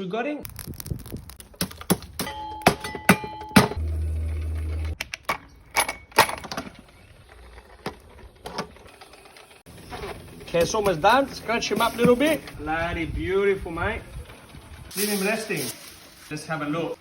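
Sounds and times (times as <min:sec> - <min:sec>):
low hum: 0:03.2 - 0:06.1.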